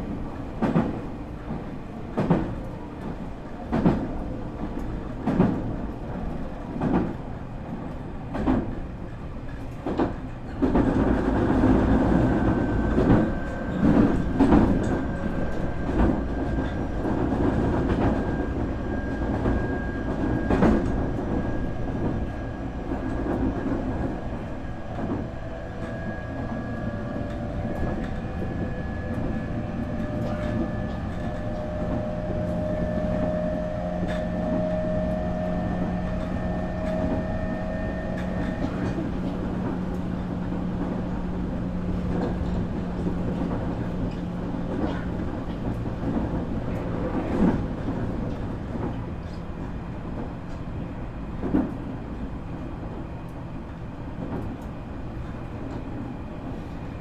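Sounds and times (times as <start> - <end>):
train rumble: 0.0 - 57.0.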